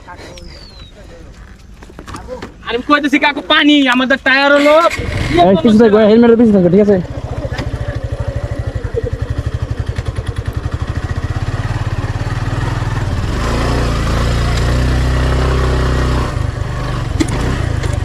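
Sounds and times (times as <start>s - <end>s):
motorcycle engine revving: 4.4s - 18.0s.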